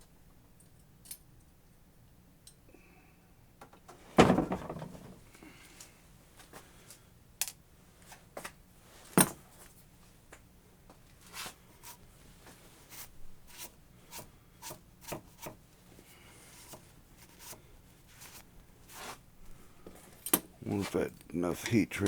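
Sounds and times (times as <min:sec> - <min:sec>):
metal tools clicking and scraping: 0:20.0 - 0:21.8.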